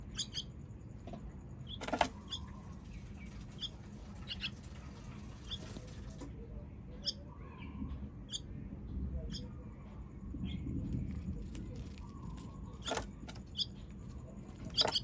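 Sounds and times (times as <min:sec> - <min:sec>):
baby bird cheeping: 0:00.0 - 0:00.6, 0:01.6 - 0:04.6, 0:06.9 - 0:08.5, 0:09.2 - 0:09.5, 0:10.4 - 0:15.0.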